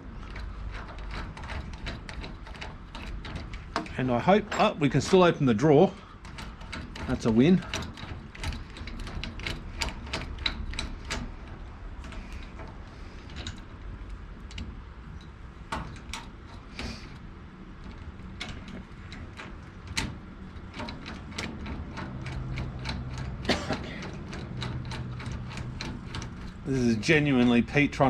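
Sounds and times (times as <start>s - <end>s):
rivet nut tool metallic clicks: 6.1s - 17.2s, 17.8s - 26.7s.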